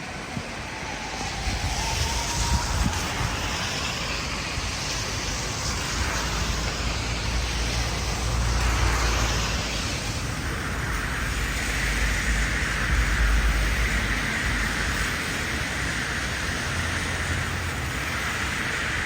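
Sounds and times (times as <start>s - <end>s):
hiss of city traffic: 0.0s - 19.0s.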